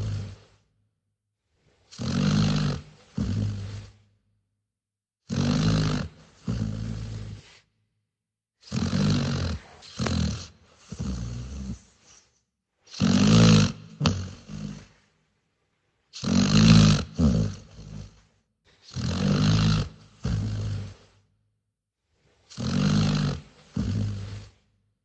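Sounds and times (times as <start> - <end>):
dog snoring: 0.0 - 0.6, 1.7 - 4.1, 5.2 - 7.7, 8.6 - 15.1, 16.1 - 21.3, 22.4 - 24.6.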